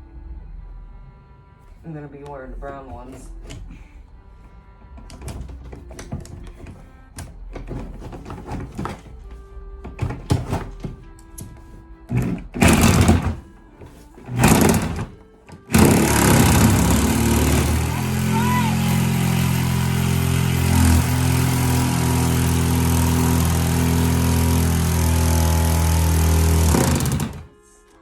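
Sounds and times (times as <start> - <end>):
electric jigsaw cutting: 12.1 - 13.4, 14.3 - 27.5.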